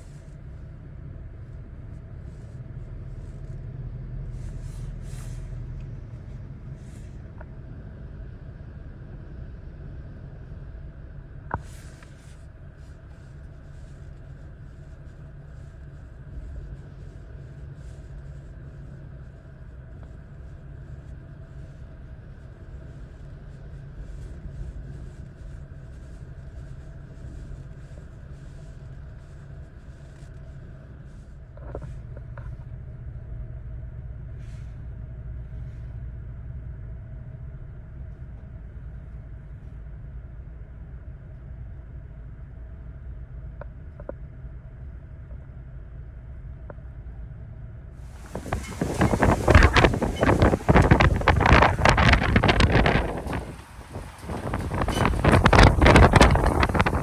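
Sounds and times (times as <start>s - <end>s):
strong wind gusting: 48.1s - 57.0s.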